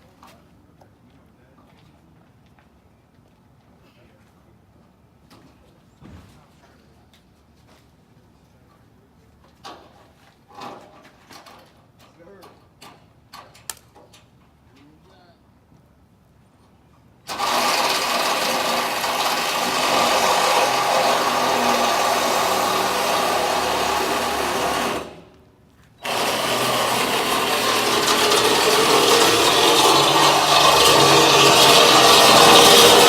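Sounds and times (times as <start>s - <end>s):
power tool running: 17.3s - 25.3s, 26.0s - 33.0s.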